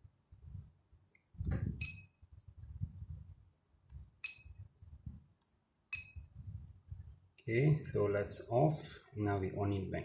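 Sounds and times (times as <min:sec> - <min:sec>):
two-tone device pings: 0:01.8 - 0:02.3, 0:04.2 - 0:04.6, 0:05.9 - 0:06.4.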